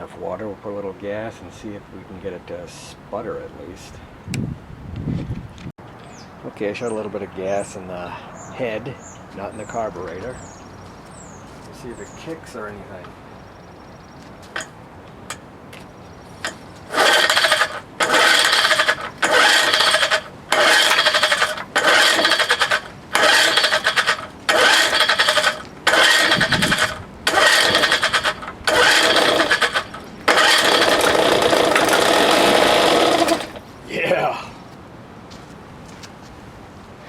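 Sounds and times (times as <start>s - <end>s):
recoil starter pulls on outboard: 16.4s - 33.6s.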